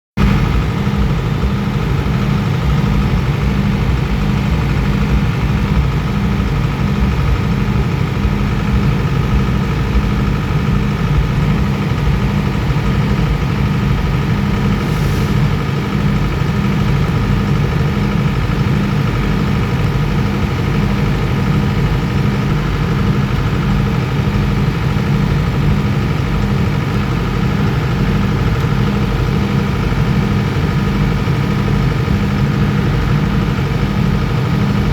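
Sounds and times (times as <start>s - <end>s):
diesel generator droning: 0.2s - 34.9s.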